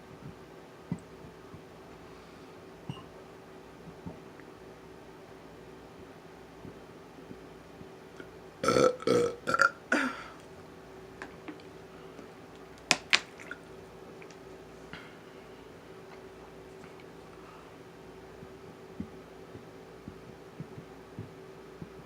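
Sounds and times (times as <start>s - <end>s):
person burping: 8.6s - 10.4s.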